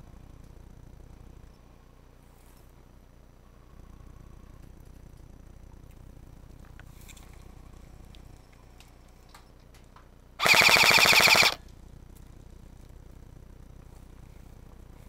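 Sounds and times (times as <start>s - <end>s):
airsoft gun full-auto burst: 10.4s - 11.6s.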